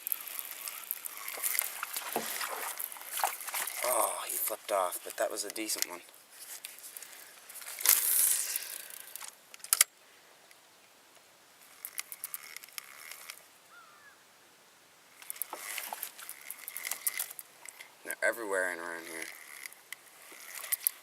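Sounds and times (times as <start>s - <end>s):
fishing reel clicking: 0.0s - 3.9s, 7.8s - 9.9s, 11.6s - 13.4s, 15.2s - 17.9s, 18.8s - 21.0s
fishing line hissing rush: 0.0s - 5.7s, 6.8s - 9.4s.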